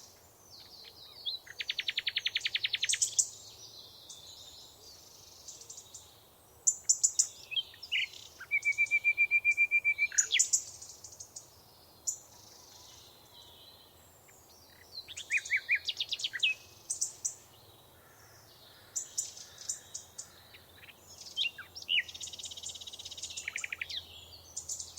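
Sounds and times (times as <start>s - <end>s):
faint background hiss: 0.0s - 24.9s
birds chirping and singing: 19.0s - 24.9s.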